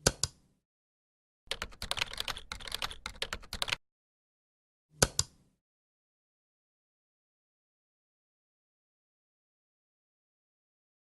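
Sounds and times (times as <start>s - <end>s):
rapid sharp clicks: 1.5s - 3.8s.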